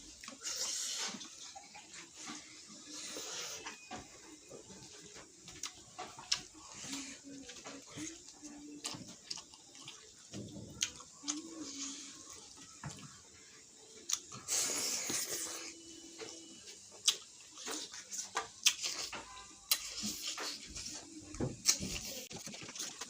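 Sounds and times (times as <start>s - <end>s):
wet slurping and sucking: 0.2s - 3.7s.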